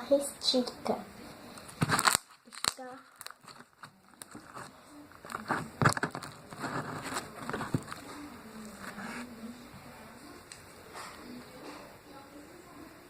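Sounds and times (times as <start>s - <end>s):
slime crackling and clicking: 1.9s - 4.4s.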